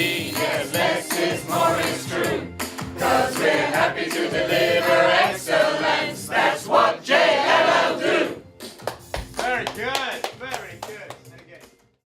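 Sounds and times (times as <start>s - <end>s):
choir singing: 0.0s - 8.5s.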